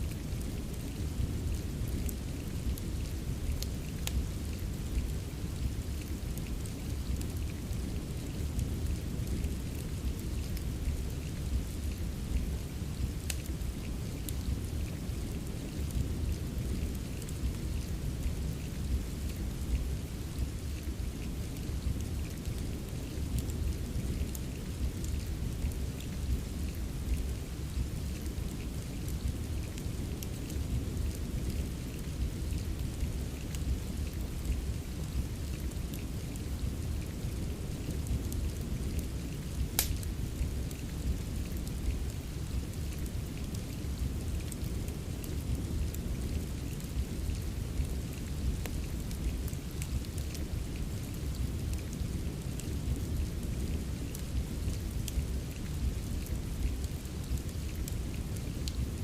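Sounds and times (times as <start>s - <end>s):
steady rain: 0.0s - 59.0s
fireplace crackling: 0.1s - 21.0s, 21.6s - 50.7s
sharp pop: 39.8s - 40.0s.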